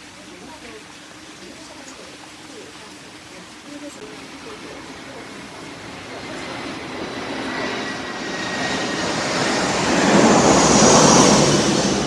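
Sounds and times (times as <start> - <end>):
jet airliner passing overhead: 3.9 - 12.0
thin high whine: 4.0 - 12.0.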